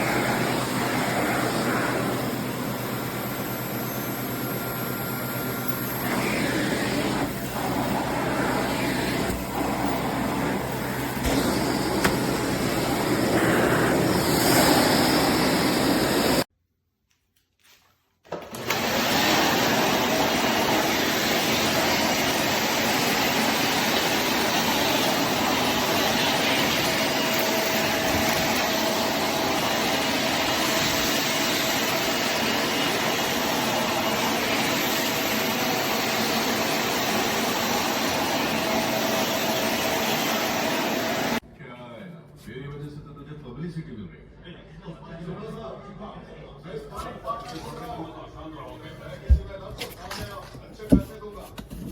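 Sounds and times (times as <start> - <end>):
vacuum cleaner running: 0.0 - 16.5, 18.3 - 41.4.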